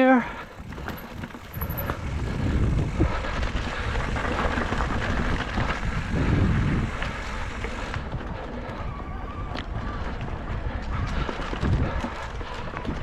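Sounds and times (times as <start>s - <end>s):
bike clicks and rattles: 0.0s - 13.0s
bike tyres crunching over rock: 0.5s - 8.5s.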